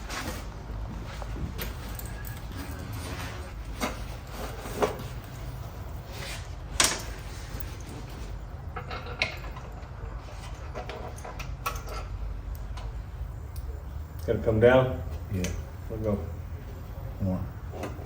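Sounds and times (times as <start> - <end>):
steady low hum: 0.0 - 18.0.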